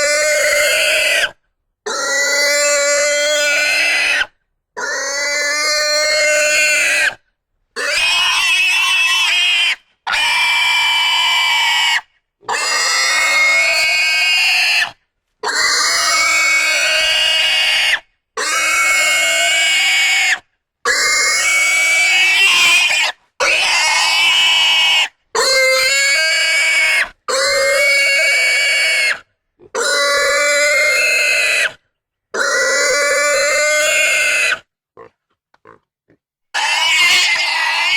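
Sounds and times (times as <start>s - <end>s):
pigs squealing: 0.0s - 7.2s, 7.8s - 31.8s, 32.4s - 35.1s, 36.6s - 37.9s.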